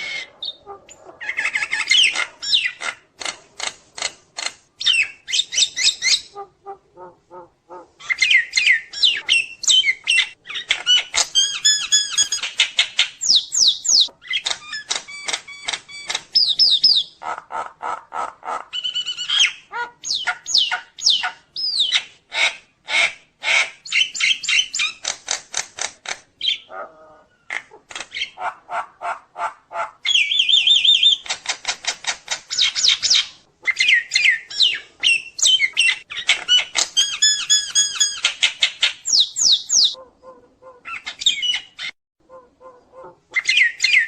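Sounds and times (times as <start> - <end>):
myna bird singing: 0.0 - 2.9, 4.8 - 17.2, 18.7 - 22.1, 30.0 - 31.3, 32.5 - 40.0, 40.9 - 42.0, 43.4 - 44.0.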